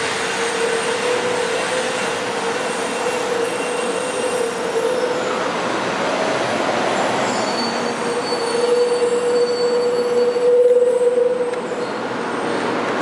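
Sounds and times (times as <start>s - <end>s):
train braking rushing noise: 0.0s - 5.6s, 6.8s - 12.7s
whining brake squeal: 0.3s - 5.5s, 6.9s - 12.1s.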